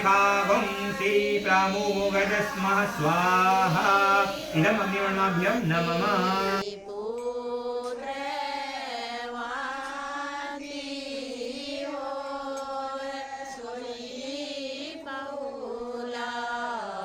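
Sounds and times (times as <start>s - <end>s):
person chanting mantras: 0.0s - 17.0s.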